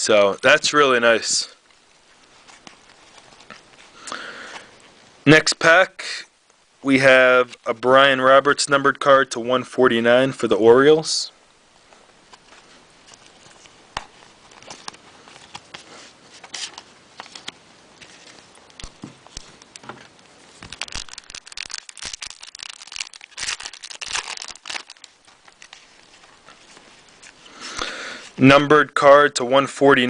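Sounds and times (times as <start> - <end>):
foil crackling: 12.3 - 28.2
foil wrapper crinkling and tearing: 13.1 - 27.5.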